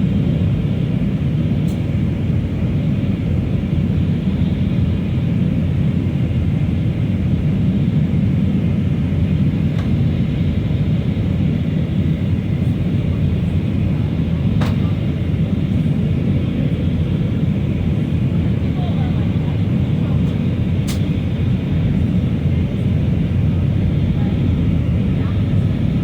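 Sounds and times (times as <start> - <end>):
airliner cabin engine roar: 0.0 - 26.0
sharp click: 20.8 - 21.1.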